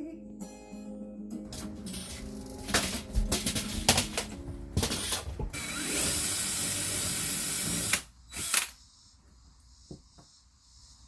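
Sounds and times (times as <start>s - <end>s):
power drill boring: 5.5s - 8.7s.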